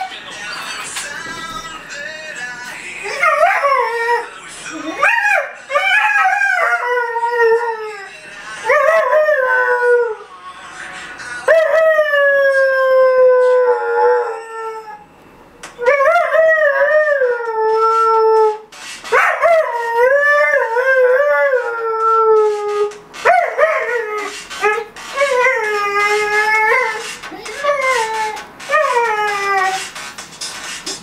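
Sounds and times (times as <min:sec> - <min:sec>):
puppy howling: 0:03.0 - 0:04.4, 0:05.0 - 0:10.2, 0:11.5 - 0:15.0, 0:15.8 - 0:29.8.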